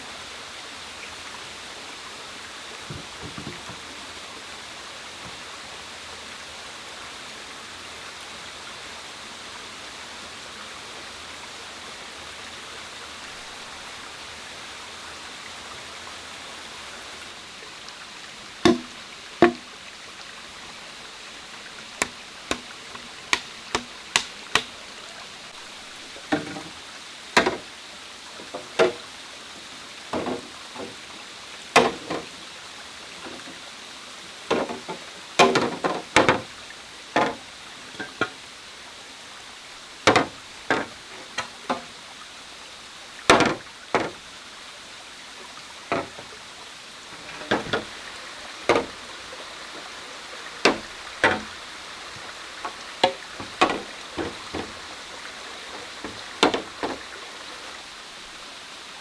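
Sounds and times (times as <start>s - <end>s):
bamboo chopping and knocking: 18.7s - 19.7s, 22.0s - 24.8s, 27.4s - 27.7s, 31.8s - 32.2s, 50.7s - 51.5s.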